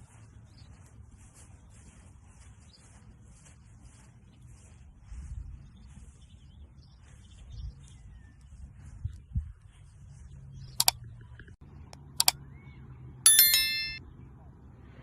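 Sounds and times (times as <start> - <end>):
sharp double clicks: 13.3 - 14.0.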